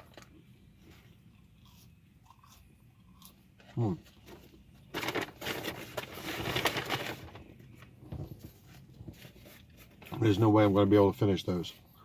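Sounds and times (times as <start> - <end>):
person eating: 0.9 - 4.2
takeout food packaging crinkling: 4.2 - 8.0.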